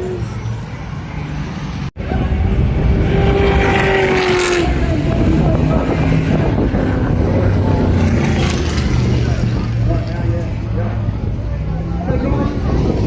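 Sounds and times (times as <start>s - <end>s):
race car engines revving: 0.0s - 13.0s
car passing close by: 1.4s - 10.3s.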